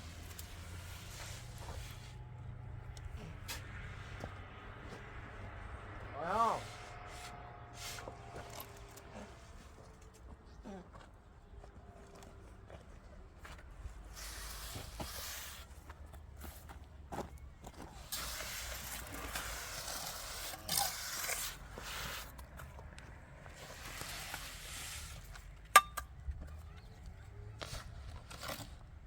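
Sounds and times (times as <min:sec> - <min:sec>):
scraping and rustling: 0:17.7 - 0:25.6.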